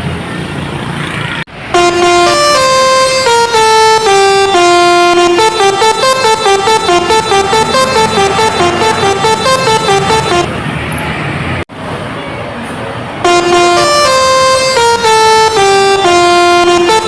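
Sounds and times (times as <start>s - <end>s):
multi-tone bus air horn melody: 1.7s - 10.6s, 13.2s - 17.0s.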